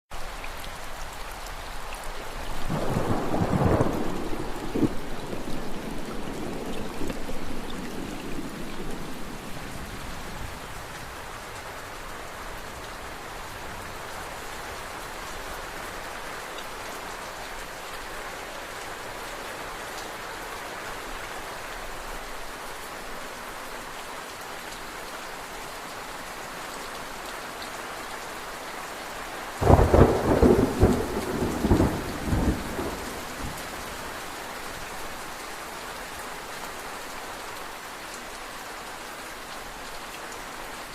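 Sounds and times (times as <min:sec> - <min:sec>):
steady rain: 0:00.1 - 0:40.9
loud thunderclap: 0:02.7 - 0:08.6, 0:29.6 - 0:33.6
rolling thunder: 0:02.7 - 0:10.6, 0:29.6 - 0:33.9.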